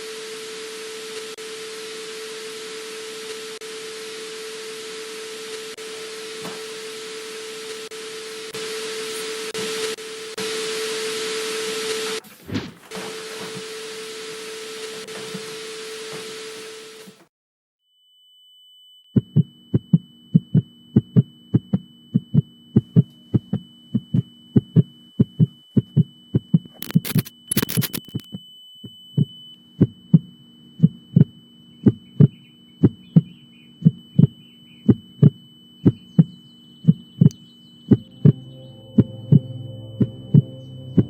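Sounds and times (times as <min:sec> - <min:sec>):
low hum: 0:19.1 - 0:41.0
heartbeat thumps: 0:19.2 - 0:26.8, 0:29.2 - 0:39.4
thin high tone: 0:26.7 - 0:29.6, 0:37.4 - 0:41.0
short noise bursts: 0:26.8 - 0:28.3.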